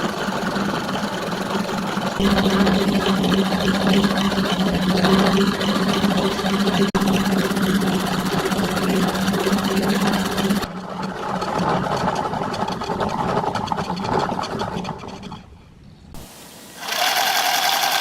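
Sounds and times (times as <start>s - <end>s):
rhythmic machine sound: 0.0s - 13.3s
small electric motor humming: 16.7s - 18.0s.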